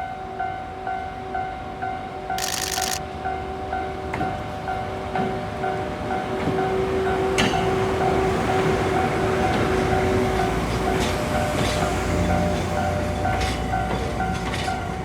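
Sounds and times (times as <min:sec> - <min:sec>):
train rumble: 0:04.1 - 0:15.0.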